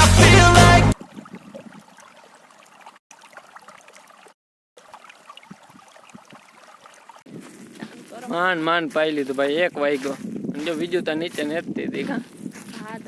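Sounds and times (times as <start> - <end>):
loud music with a beat: 0.0 - 1.0
water trickling through channels: 1.0 - 7.4.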